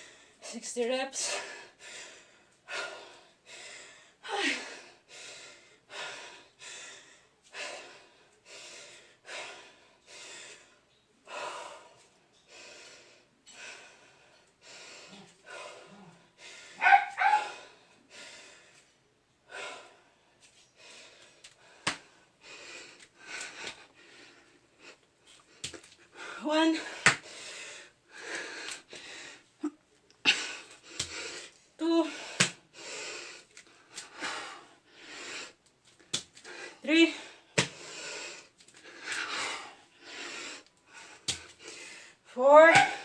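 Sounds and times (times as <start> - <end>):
man panting heavily: 1.3 - 18.9, 19.5 - 20.2, 20.8 - 29.6, 30.3 - 35.6.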